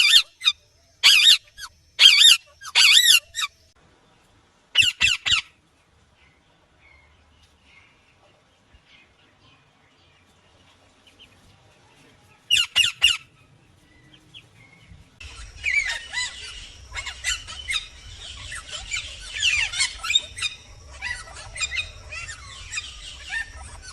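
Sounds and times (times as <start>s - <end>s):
parakeets squawking and chirping: 0.0s - 3.7s, 4.8s - 5.5s, 12.5s - 13.6s, 15.2s - 23.9s
low steady hum: 13.2s - 23.9s.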